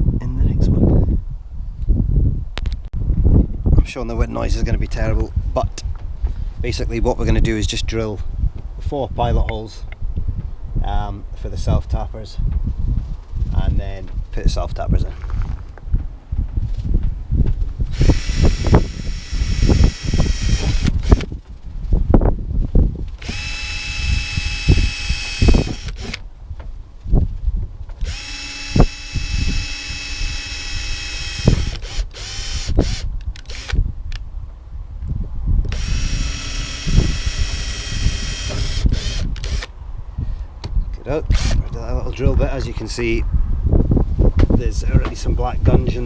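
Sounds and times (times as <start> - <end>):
wind buffeting microphone: 0.0 - 46.0
power drill whining into metal: 17.9 - 21.3, 23.2 - 26.2, 28.0 - 33.8, 35.7 - 39.7, 41.3 - 41.6.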